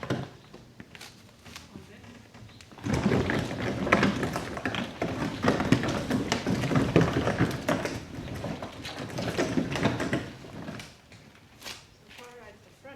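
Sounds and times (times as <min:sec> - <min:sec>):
small wheels rattling over rough ground: 0:02.7 - 0:11.1.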